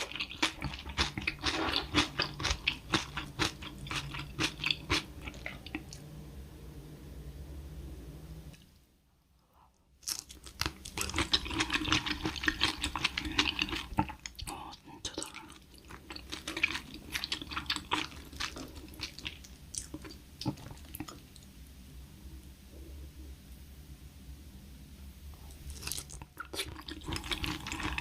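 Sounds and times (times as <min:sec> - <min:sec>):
chewing with crisp crackling: 0:00.0 - 0:06.0, 0:10.0 - 0:21.5, 0:25.5 - 0:28.0.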